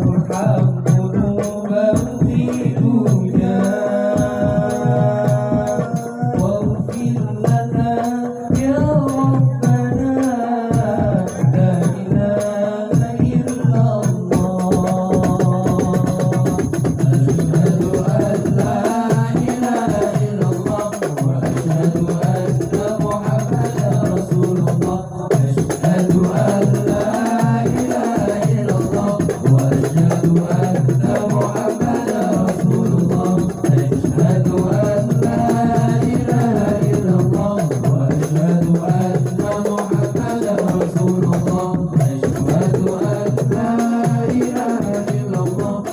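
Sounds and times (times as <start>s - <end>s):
devotional song singing: 0.0s - 45.9s
hand percussion with jingles: 14.0s - 45.9s.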